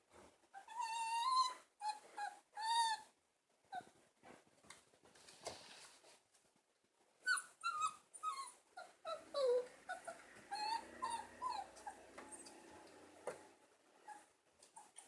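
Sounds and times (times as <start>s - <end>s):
puppy whimpering: 0.6s - 3.1s, 7.3s - 12.7s, 14.1s - 15.0s.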